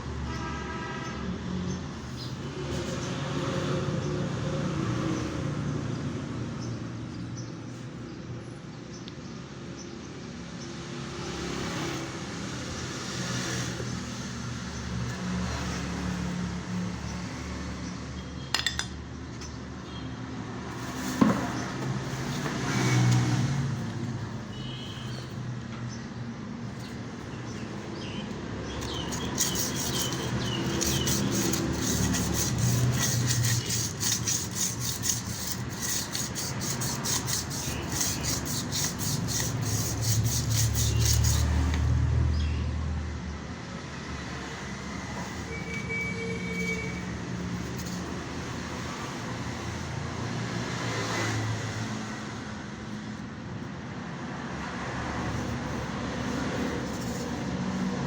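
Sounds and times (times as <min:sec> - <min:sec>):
hand sanding strokes: 0:20.7 - 0:24.5, 0:28.8 - 0:41.9, 0:46.5 - 0:49.6, 0:54.9 - 0:58.0.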